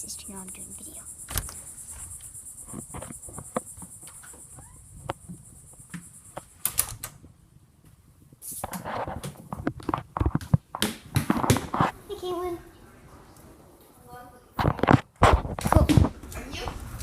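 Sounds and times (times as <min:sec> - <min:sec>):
high-pitched insect-like buzz: 0:00.0 - 0:06.6.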